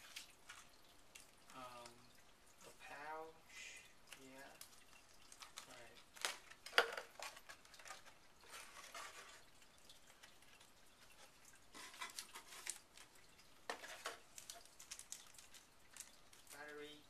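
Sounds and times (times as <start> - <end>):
packaging rustling and clicking: 5.4 - 9.4, 11.8 - 16.6.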